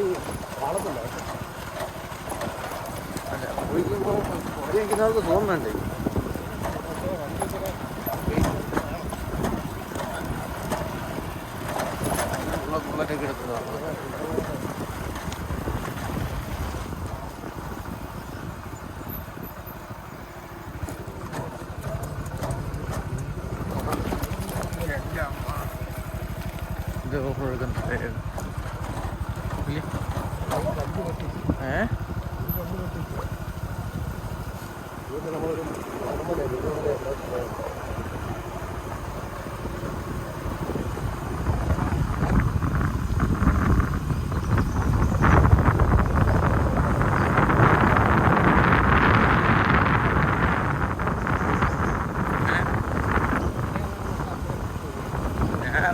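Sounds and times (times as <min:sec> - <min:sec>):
motorcycle engine running: 0:00.0 - 0:55.9
wind buffeting microphone: 0:00.0 - 0:55.9.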